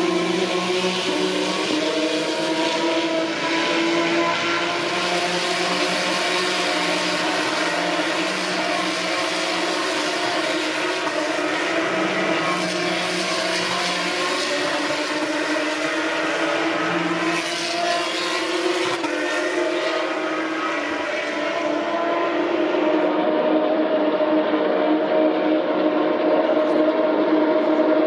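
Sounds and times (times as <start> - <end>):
racing car engines at high revs: 0.0 - 28.0.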